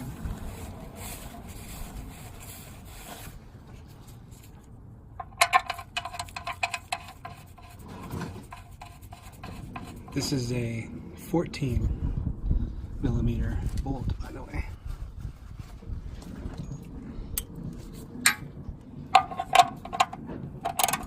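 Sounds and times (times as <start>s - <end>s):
rubbing and wiping: 0.2s - 4.7s, 5.7s - 10.5s, 14.6s - 16.2s
metallic clicks and rattles: 5.2s - 7.8s, 19.1s - 21.0s.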